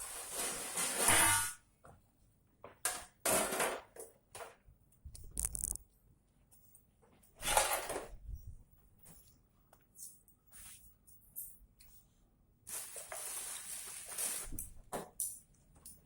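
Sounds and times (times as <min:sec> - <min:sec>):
tools scraping and rustling: 0:07.4 - 0:08.1.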